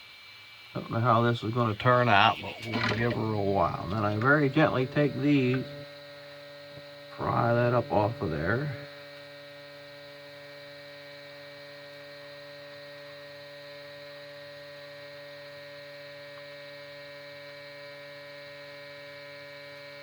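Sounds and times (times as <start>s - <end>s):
steady electrical hum: 0.0s - 20.0s.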